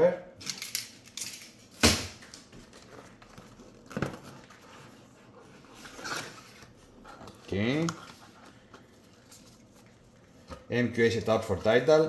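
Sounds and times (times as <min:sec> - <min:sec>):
cardboard packaging rustling: 0:02.4 - 0:12.0.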